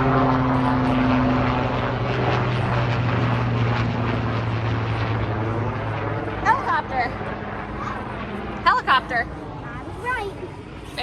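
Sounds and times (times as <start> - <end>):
helicopter flying hum: 0.0 - 11.0.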